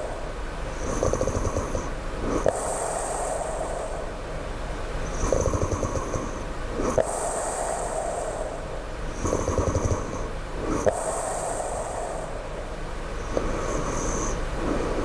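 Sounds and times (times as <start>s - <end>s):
person snoring low: 0.8s - 3.6s, 5.1s - 12.4s, 13.2s - 15.0s.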